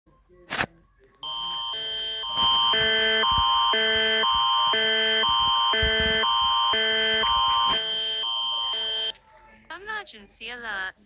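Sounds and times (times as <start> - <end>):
emergency alert tone: 1.2 - 9.1.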